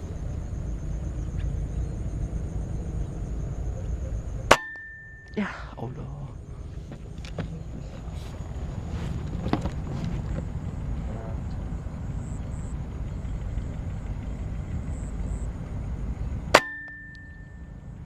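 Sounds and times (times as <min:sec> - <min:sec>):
low rumble: 0:00.0 - 0:18.0
brief ringing tone: 0:16.6 - 0:17.9.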